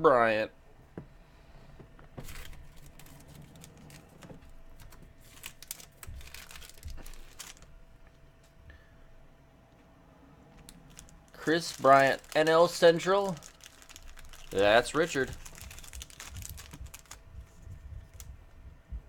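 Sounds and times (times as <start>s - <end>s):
trading cards and packaging rustling: 2.0s - 7.8s, 10.6s - 18.4s.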